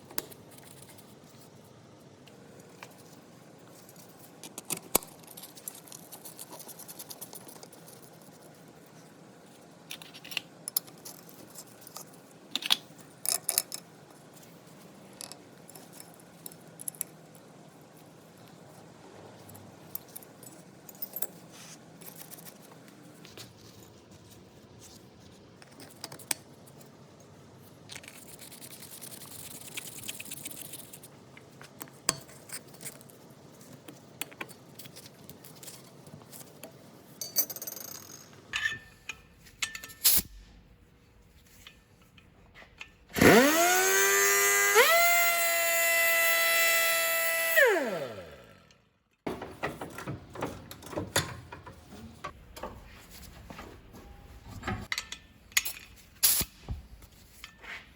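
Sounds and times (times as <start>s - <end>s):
air grinder motor whine: 43.2s - 48.6s.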